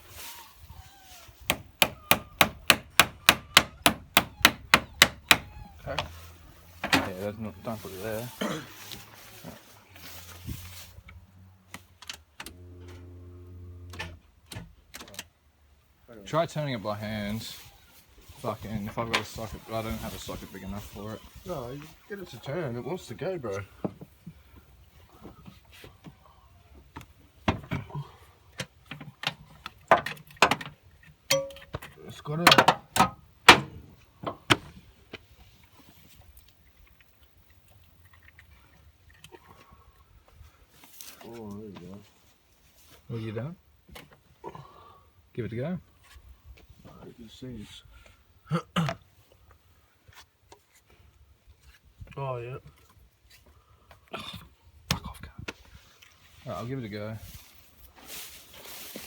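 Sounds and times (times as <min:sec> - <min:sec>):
hand tools clicking and knocking: 0:01.4 - 0:06.1, 0:28.6 - 0:34.7.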